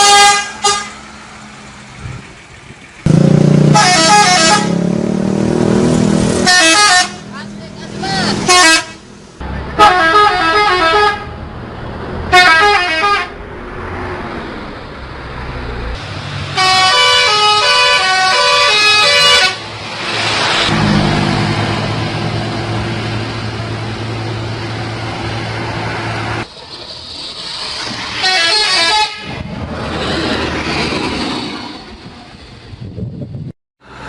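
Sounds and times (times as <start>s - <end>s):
bus musical horn: 0.0s - 1.0s, 3.1s - 5.0s, 6.3s - 7.3s, 8.3s - 9.0s, 9.8s - 11.4s, 12.3s - 13.4s, 16.5s - 19.6s, 28.2s - 29.4s
engine running: 1.0s - 9.6s, 19.6s - 28.2s.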